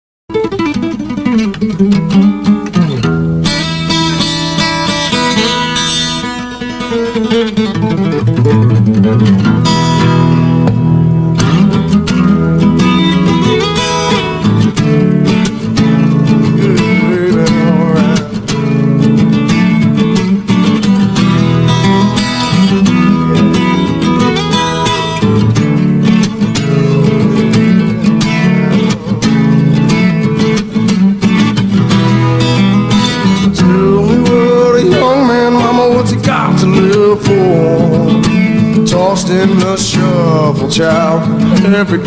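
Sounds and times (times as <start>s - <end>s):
instrumental guitar music: 0.3s - 42.0s.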